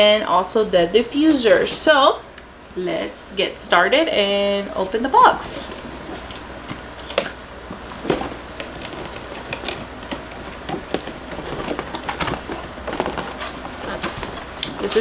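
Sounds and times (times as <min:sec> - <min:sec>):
cardboard box being opened: 0:07.0 - 0:15.0.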